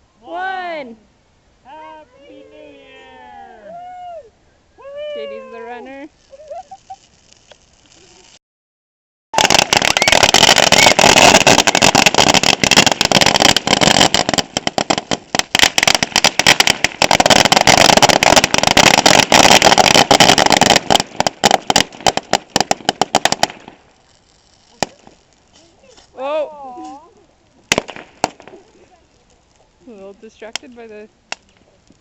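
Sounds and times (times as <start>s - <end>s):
firecrackers banging: 9.4s - 26.2s, 26.8s - 32.0s.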